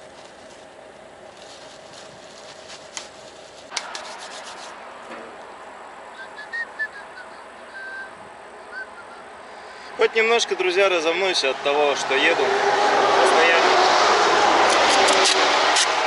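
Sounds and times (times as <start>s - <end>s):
rubbing and scraping: 0.0s - 5.3s.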